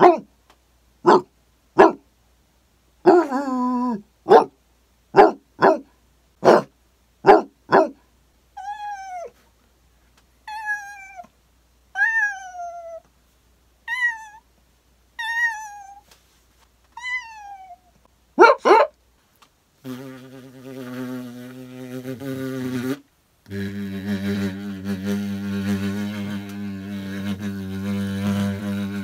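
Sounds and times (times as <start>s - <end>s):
person imitating dog barks: 0.0s - 0.3s, 1.0s - 2.0s, 3.0s - 8.0s, 18.4s - 19.0s
person imitating cat meows: 3.1s - 4.0s, 8.6s - 9.3s, 10.5s - 11.3s, 12.0s - 13.0s, 13.9s - 14.4s, 17.0s - 17.9s.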